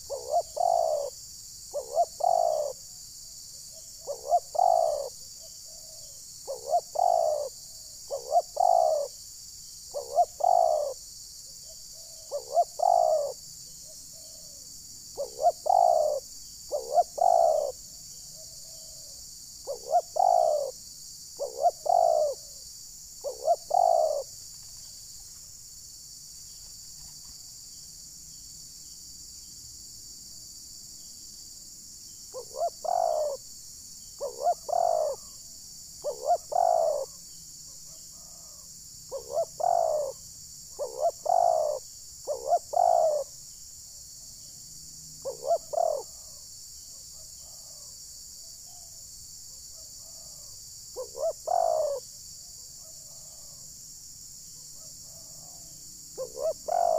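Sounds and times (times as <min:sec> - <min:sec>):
doves cooing: 0:00.0 - 0:02.8, 0:04.0 - 0:09.2, 0:09.9 - 0:11.0, 0:12.0 - 0:17.8, 0:18.4 - 0:20.8, 0:21.4 - 0:22.6, 0:23.2 - 0:24.3, 0:32.3 - 0:33.4, 0:34.2 - 0:35.4, 0:36.0 - 0:37.2, 0:38.2 - 0:40.2, 0:40.8 - 0:43.3, 0:45.2 - 0:46.4, 0:50.0 - 0:52.0, 0:55.0 - 0:56.9.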